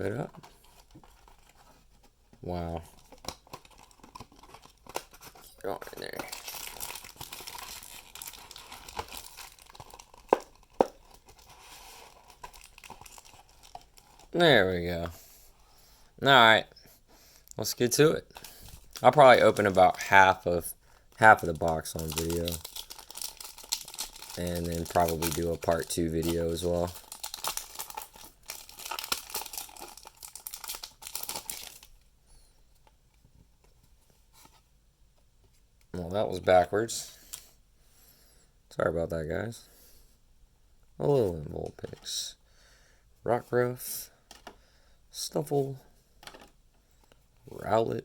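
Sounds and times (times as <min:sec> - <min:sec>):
plastic wrap crinkling and tearing: 0:02.8 - 0:14.6, 0:18.2 - 0:20.5, 0:21.1 - 0:31.9.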